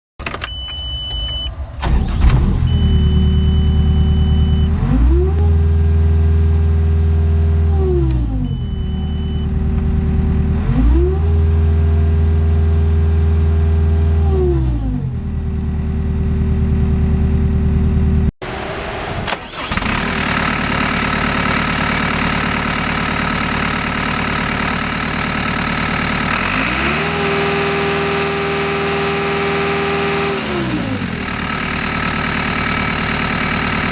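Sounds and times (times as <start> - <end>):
diesel engine revving: 1.3 - 33.9
short high beep: 2.7 - 4.8.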